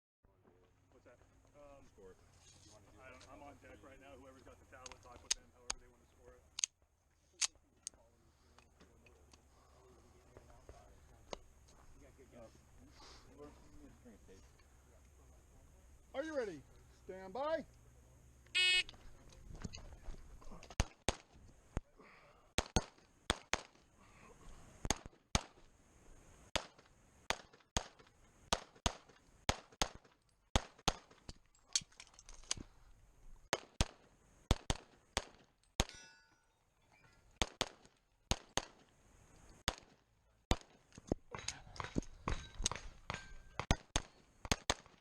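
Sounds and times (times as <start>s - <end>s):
electronic timer beep: 18.6s - 18.9s
pistol gunshots: 22.6s - 23.8s, 26.5s - 31.2s, 33.5s - 36.0s, 37.4s - 38.8s, 39.6s - 40.8s, 42.6s - 45.0s.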